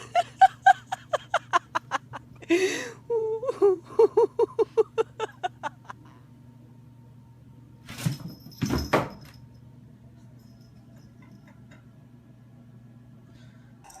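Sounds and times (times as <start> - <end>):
person laughing hard: 0.0 - 6.2
gasping in-breath: 2.5 - 3.0.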